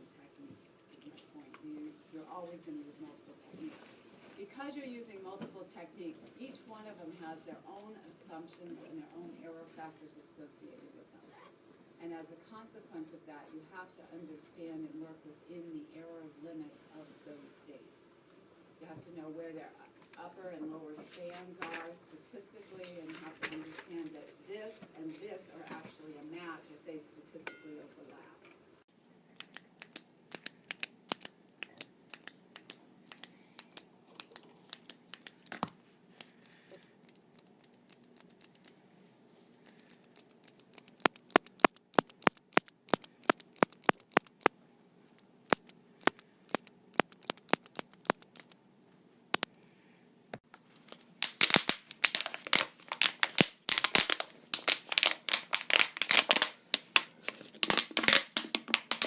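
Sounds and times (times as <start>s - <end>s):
dry clicks and crackles: 29.4s - 38.8s, 39.6s - 48.6s, 49.3s - 49.6s, 50.4s - 59.0s.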